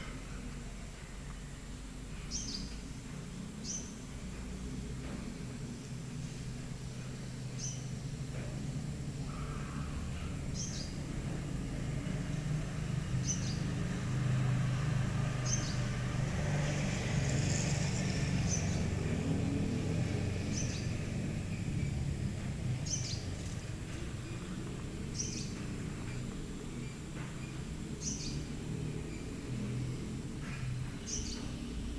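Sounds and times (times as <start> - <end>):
low steady rumble: 0.0 - 31.9
small bird chirping: 2.2 - 2.8, 7.0 - 8.0, 9.3 - 11.0, 12.5 - 14.4, 15.2 - 15.9, 22.8 - 31.8.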